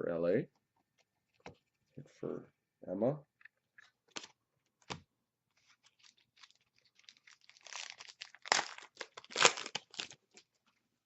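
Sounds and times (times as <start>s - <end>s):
wrapper crinkling and tearing: 5.6s - 10.8s.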